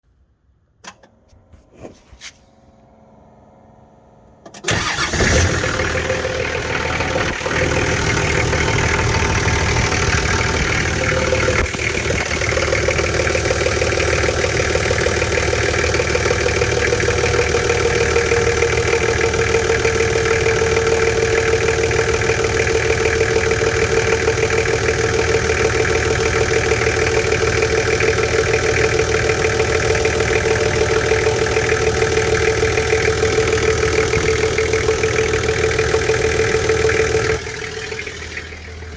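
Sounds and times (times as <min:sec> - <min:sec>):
clicks: 0:00.8 - 0:02.4
diesel engine idling: 0:02.7 - 0:38.9.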